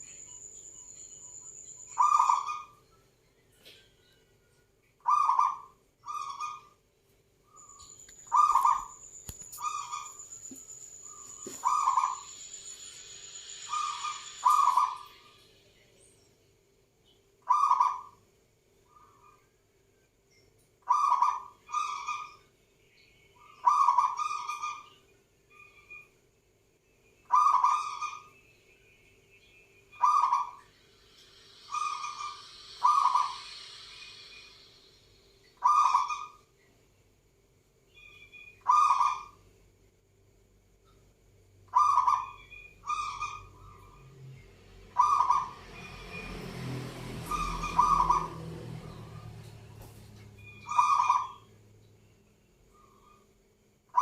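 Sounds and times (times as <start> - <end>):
thin high whine: 7.5 - 16.3, 28.4 - 36.4.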